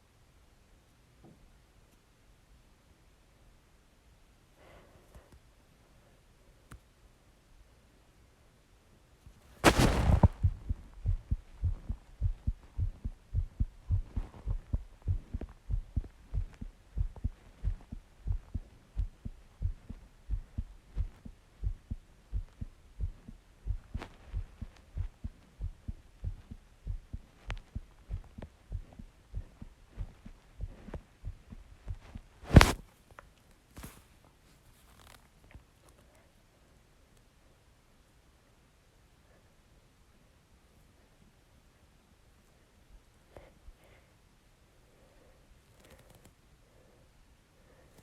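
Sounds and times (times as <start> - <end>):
heartbeat thumps: 9.6 - 32.8.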